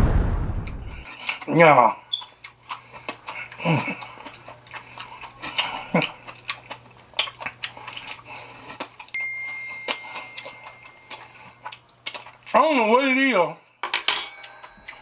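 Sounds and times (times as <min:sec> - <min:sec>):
thin steady ringing tone: 0:09.0 - 0:11.7, 0:13.8 - 0:15.0.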